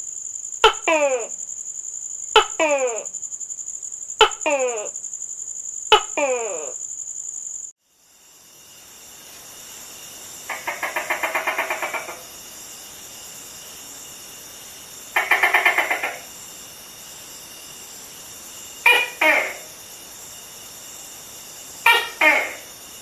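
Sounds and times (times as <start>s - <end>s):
steady background hiss: 6.8s - 23.0s.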